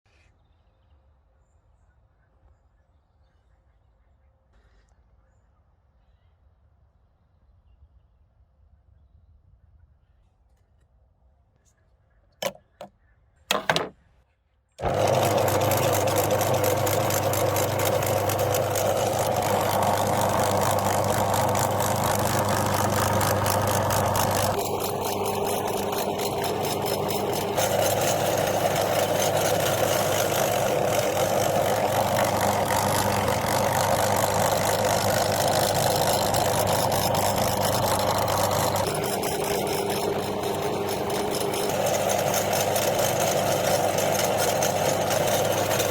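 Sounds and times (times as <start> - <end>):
electric meat grinder motor humming: 14.8 - 45.9.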